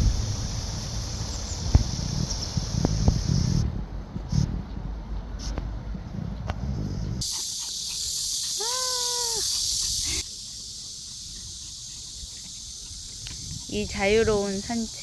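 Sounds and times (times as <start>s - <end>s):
high insect drone: 0.0s - 3.6s, 7.2s - 15.0s
drawn-out animal call: 7.2s - 15.0s.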